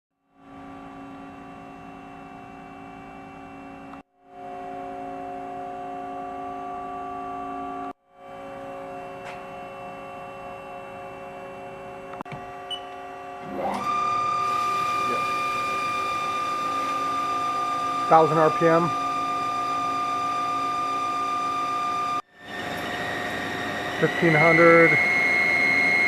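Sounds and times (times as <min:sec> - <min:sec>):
lathe humming: 0:13.4 - 0:26.0.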